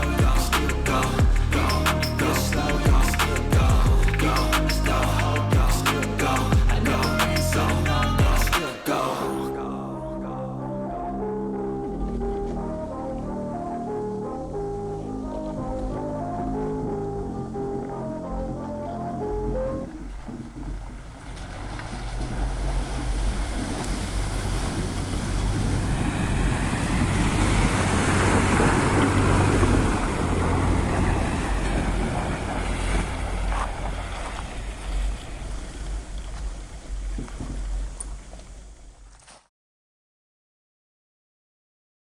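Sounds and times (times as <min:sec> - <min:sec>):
wind rumbling on microphone: 0:11.2 - 0:39.1.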